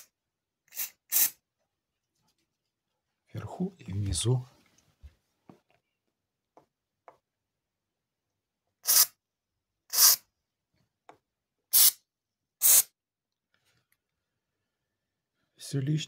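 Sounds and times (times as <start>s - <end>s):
aerosol can hissing spray: 0.7s - 1.4s, 8.8s - 9.1s, 9.9s - 10.2s, 11.7s - 12.0s, 12.6s - 12.9s.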